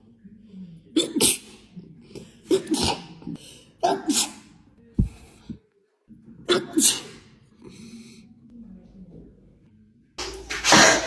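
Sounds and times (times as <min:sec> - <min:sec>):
person sneezing: 0:10.2 - 0:11.0.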